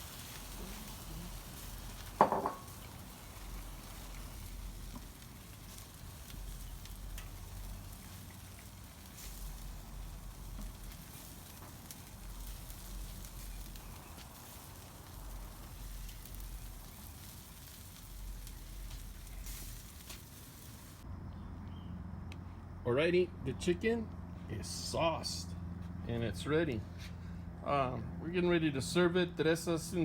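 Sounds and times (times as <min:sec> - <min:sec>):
faint crackles: 0:00.0 - 0:21.0
chicken sizzling over charcoal: 0:00.0 - 0:21.1.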